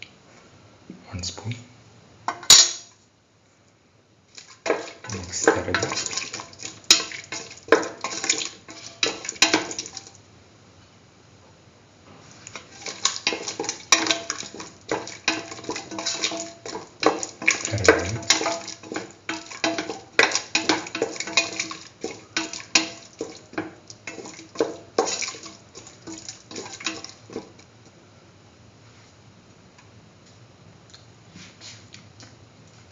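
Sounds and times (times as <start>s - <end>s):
utensil stirring food in a pan: 4.3s - 10.2s, 12.2s - 27.7s
utensil clattering against pan: 4.6s - 10.1s, 12.5s - 27.6s.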